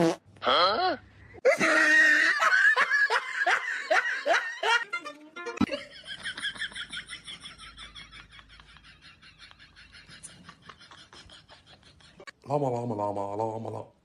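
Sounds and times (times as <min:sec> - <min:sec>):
person laughing hard: 0:01.5 - 0:05.0.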